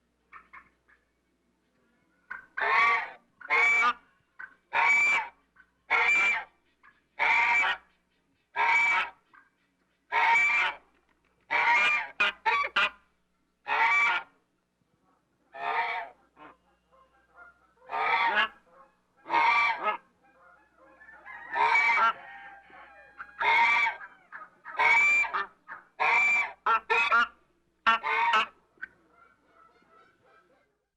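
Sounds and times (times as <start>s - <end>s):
geese honking: 2.3s - 7.9s, 8.6s - 9.5s, 10.1s - 10.8s, 11.5s - 13.0s, 13.7s - 14.4s, 15.6s - 30.6s.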